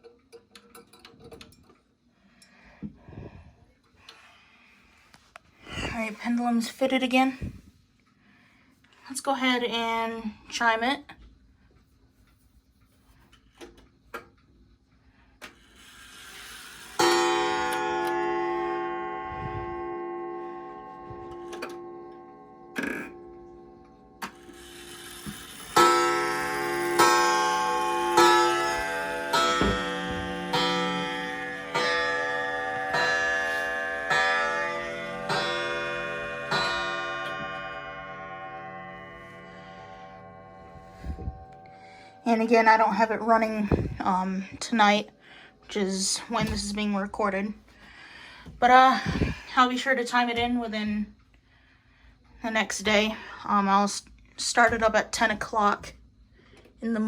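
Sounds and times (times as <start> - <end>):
clock gong ringing: 15.8 - 47.4.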